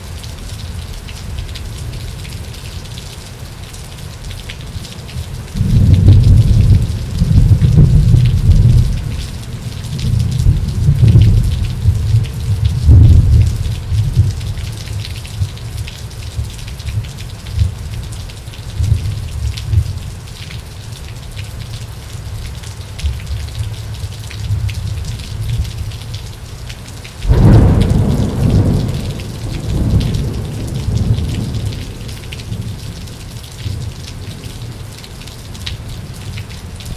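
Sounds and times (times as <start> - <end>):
steady rain: 0.0 - 36.9
low rolling thunder: 5.2 - 15.6, 27.2 - 34.7
loud thunderclap: 5.6 - 9.1, 10.0 - 14.6, 27.2 - 32.8.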